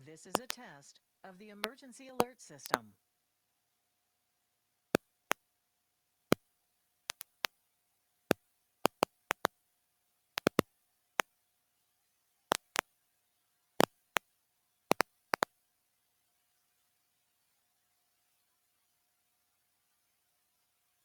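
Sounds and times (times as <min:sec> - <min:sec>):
faint steady tone: 0:00.0 - 0:21.0
sharp clicks and pops: 0:00.3 - 0:00.6, 0:07.1 - 0:07.6, 0:08.3 - 0:09.5, 0:10.4 - 0:11.3, 0:12.5 - 0:12.9, 0:14.9 - 0:15.5.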